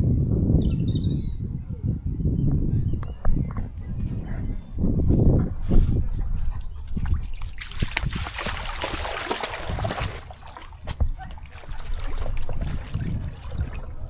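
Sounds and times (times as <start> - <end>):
water splashing: 6.3 - 14.0.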